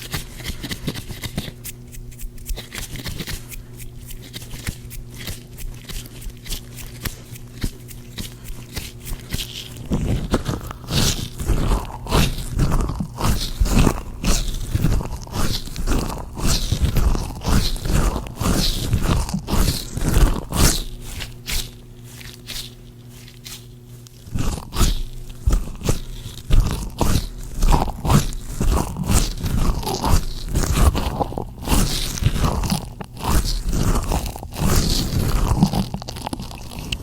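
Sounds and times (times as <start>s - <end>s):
gloved hands rubbing together: 0.0s - 24.1s.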